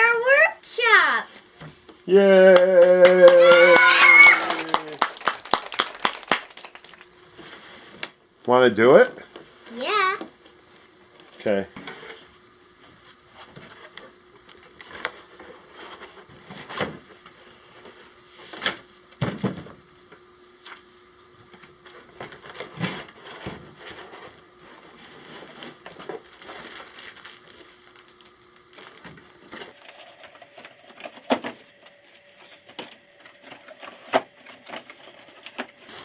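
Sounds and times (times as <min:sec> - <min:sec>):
packaging being handled and opened: 0:26.2 - 0:29.0.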